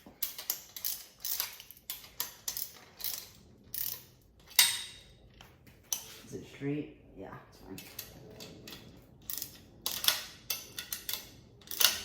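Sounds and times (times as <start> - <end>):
socket ratchet wrench clicking: 0.2 - 4.7, 9.3 - 12.0.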